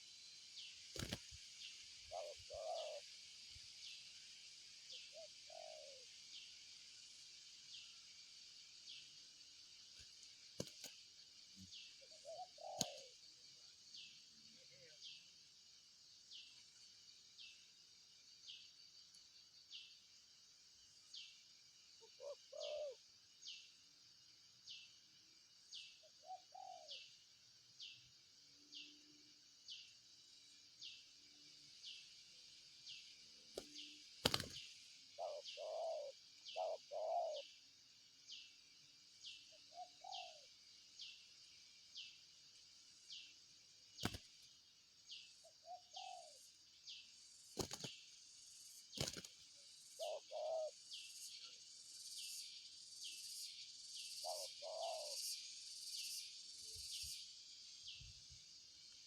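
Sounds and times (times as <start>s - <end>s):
dove cooing: 2.1s - 3.0s, 5.1s - 6.0s, 12.1s - 13.1s, 22.0s - 23.0s, 26.2s - 27.0s, 35.2s - 37.4s, 39.7s - 40.5s, 45.6s - 46.4s, 50.0s - 50.8s, 54.2s - 55.2s.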